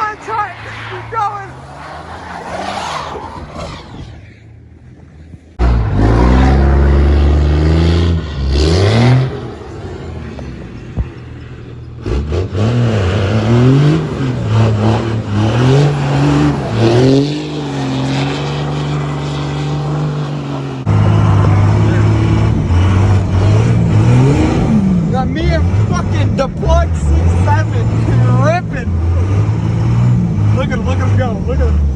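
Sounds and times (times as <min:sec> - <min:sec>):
truck engine revving: 0:00.0 - 0:31.9.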